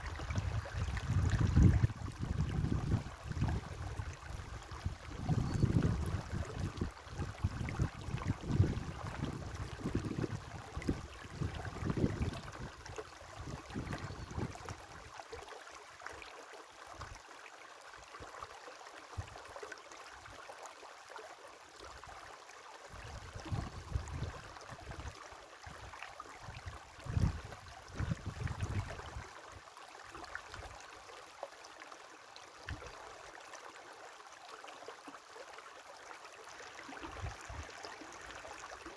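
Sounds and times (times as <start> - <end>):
river water flowing: 0.0 - 38.9.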